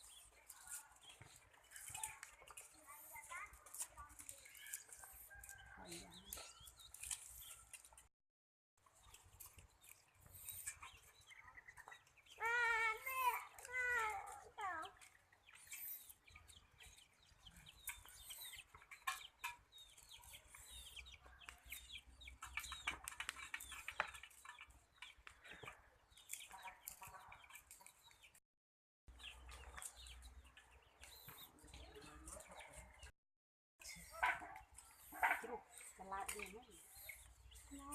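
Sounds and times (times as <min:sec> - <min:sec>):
chickens clucking: 0:08.8 - 0:28.4, 0:29.2 - 0:33.1, 0:33.9 - 0:37.9.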